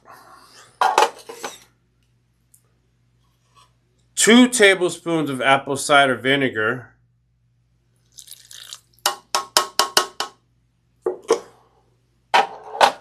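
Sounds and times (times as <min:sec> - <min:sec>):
vinegar pouring into a bowl: 0:08.0 - 0:09.0.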